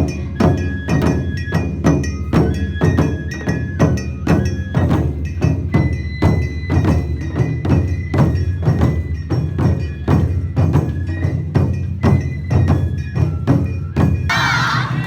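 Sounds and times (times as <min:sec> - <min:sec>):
drum and bell strikes: 0:00.0 - 0:15.0
held high flute note: 0:14.3 - 0:15.0.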